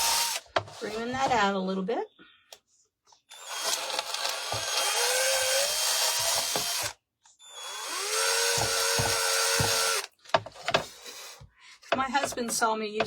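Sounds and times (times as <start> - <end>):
power drill running: 0.0 - 1.0, 3.3 - 10.1.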